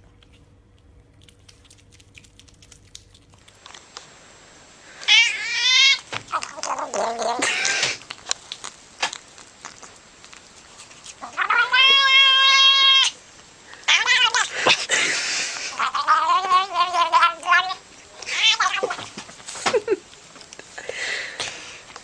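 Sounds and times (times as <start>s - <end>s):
cat calling: 5.0s - 8.1s, 11.2s - 13.2s, 13.8s - 14.8s, 15.7s - 19.0s.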